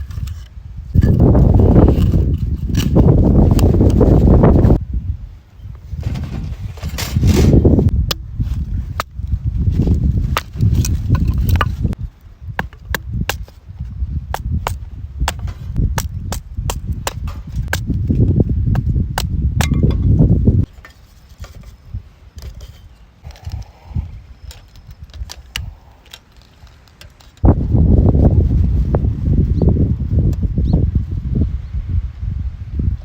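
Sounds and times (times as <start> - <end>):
wind buffeting microphone: 0.0 - 20.8, 21.4 - 26.1, 27.4 - 33.0.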